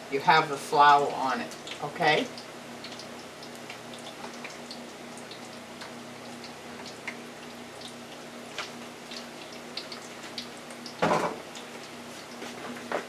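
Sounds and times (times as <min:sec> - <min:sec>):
fries deep-frying in oil: 0:00.0 - 0:13.0
knock: 0:11.0 - 0:11.4.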